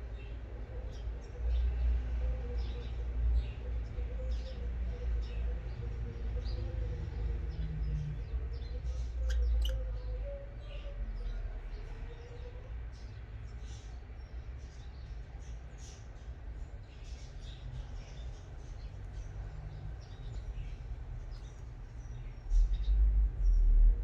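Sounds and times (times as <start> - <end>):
budgerigars chirping: 9.0 - 9.9.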